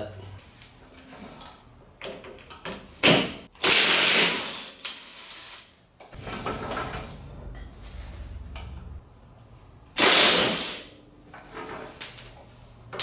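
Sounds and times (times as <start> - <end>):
low rumble: 6.2 - 10.0.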